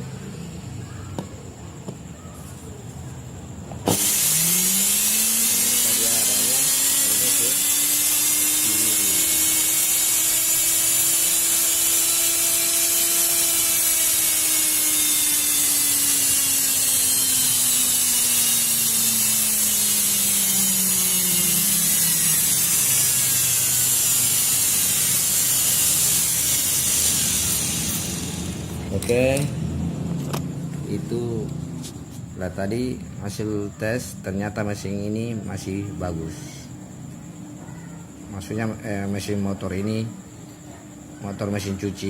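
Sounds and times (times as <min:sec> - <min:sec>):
electric motor whining with hiss: 0:03.9 - 0:30.6.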